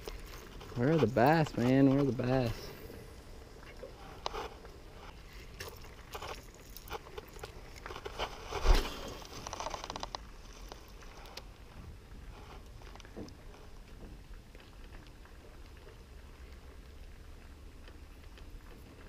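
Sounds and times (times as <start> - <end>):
clicks and scraping handling noises: 0.0 - 3.0, 3.6 - 11.5.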